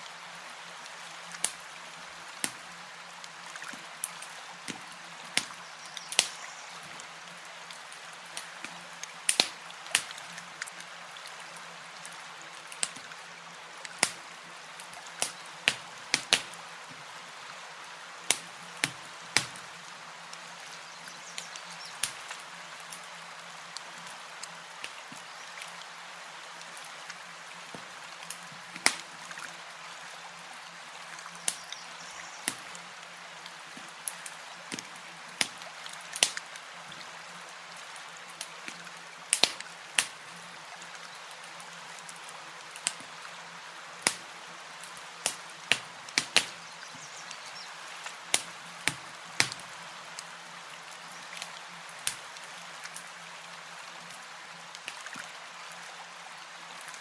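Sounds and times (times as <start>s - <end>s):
lapping water hiss: 0.8s - 53.1s
campfire crackling and popping: 1.3s - 1.6s, 2.4s - 7.0s, 7.7s - 10.9s, 12.0s - 13.2s, 13.8s - 17.0s, 18.2s - 23.1s, 27.7s - 29.2s, 32.4s - 32.8s, 33.8s - 36.6s, 38.4s - 40.3s, 42.0s - 43.2s, 44.0s - 47.4s, 48.0s - 50.3s, 51.4s - 53.1s.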